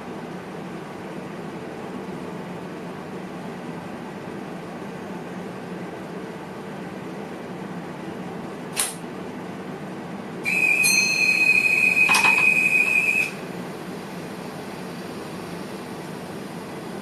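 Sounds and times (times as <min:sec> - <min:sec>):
sharp click: 0:08.8 - 0:09.0
train running noise: 0:10.4 - 0:17.0
high-pitched electronic warning tone: 0:10.5 - 0:13.4.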